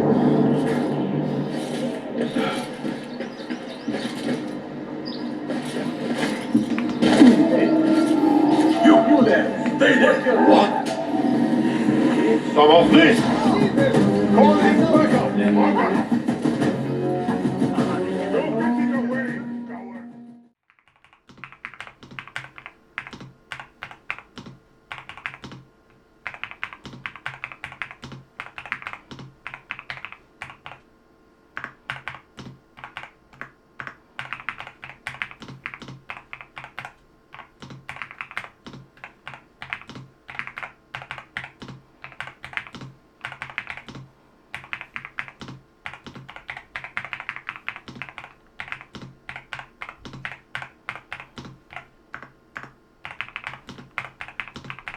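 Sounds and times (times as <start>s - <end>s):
mechanical keyboard typing: 5.7s - 7.4s, 20.7s - 30.9s, 31.6s - 54.9s.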